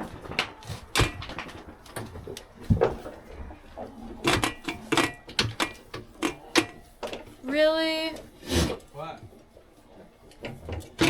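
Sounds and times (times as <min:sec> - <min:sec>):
sharp knocks and clatters: 0:00.0 - 0:07.4.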